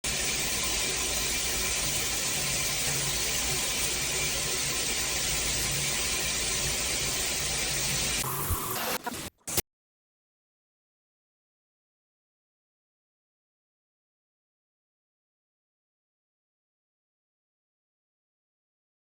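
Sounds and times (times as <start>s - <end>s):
shower water spraying: 0.1s - 9.6s.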